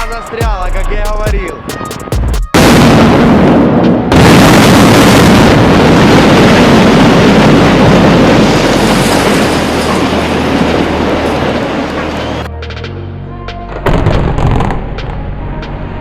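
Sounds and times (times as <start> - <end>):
loud demolition blast: 2.5 - 12.5
rumble of collapsing building: 2.6 - 12.5.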